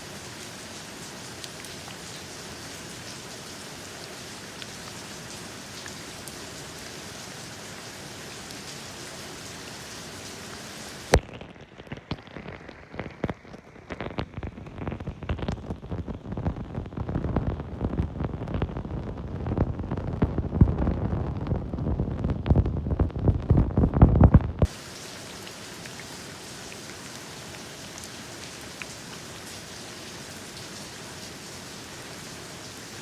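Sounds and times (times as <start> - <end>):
steady rain falling: 0.0 - 33.0
low thumps and rumble: 15.0 - 24.7.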